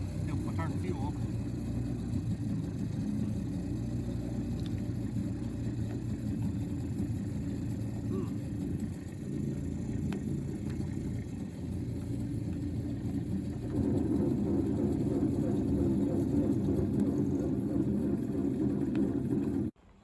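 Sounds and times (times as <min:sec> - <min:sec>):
two-stroke outboard motor running: 0:00.0 - 0:19.8.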